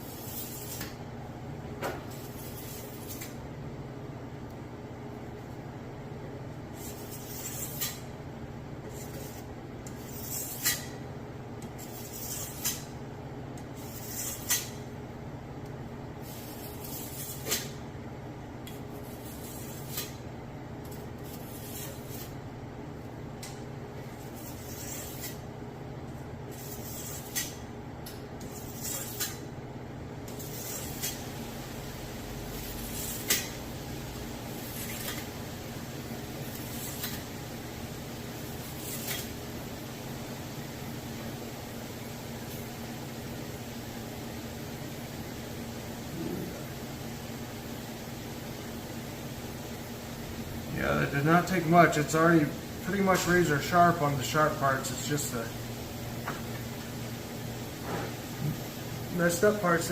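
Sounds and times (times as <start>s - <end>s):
blade scraping on sharpening stone: 8.9s - 10.9s, 26.5s - 27.6s.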